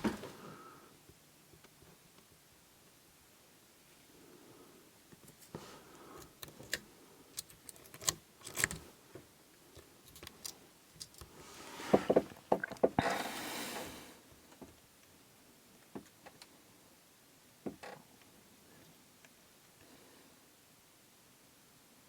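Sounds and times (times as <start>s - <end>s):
lock pick clicking in padlock: 7.4s - 8.8s.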